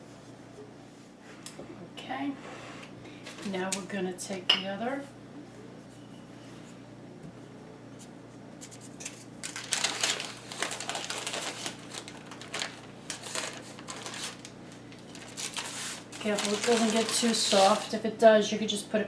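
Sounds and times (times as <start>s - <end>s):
pastry sheet rustling and crackling: 8.7s - 18.0s.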